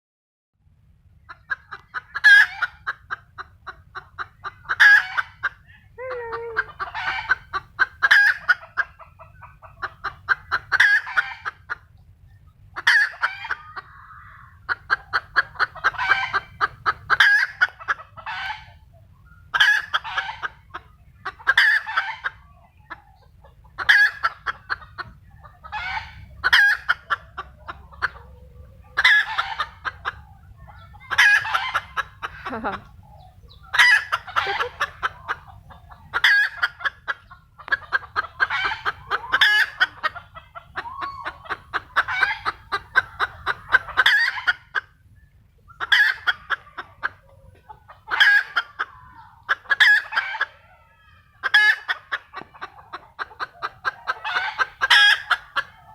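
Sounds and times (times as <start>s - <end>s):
chicken cackling: 1.2s - 55.9s.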